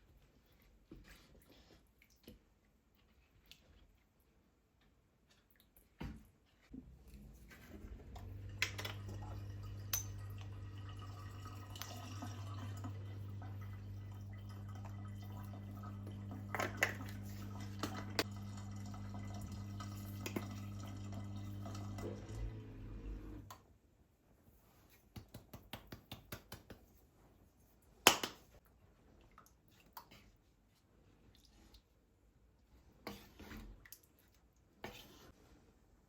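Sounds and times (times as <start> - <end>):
low electric hum: 6.7 - 23.5.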